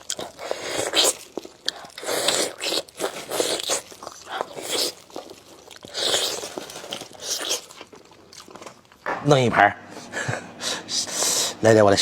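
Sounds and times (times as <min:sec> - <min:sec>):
person chewing crunchy food: 0:00.0 - 0:09.0.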